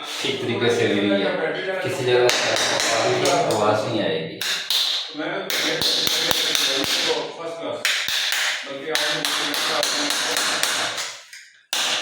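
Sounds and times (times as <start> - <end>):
hard taps on floor tiles: 2.3 - 3.7.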